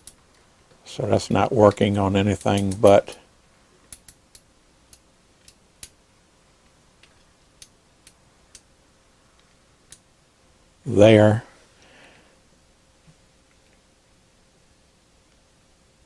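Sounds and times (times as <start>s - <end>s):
rotary switch detent clicks: 3.9s - 6.0s.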